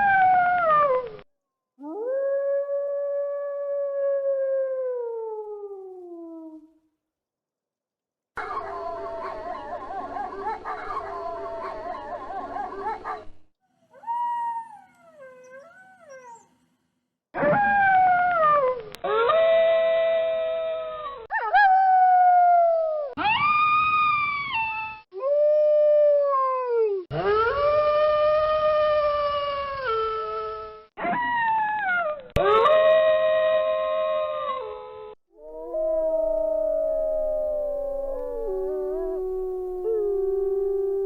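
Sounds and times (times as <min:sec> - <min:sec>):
wolves howling: 0:35.4 - 0:41.0.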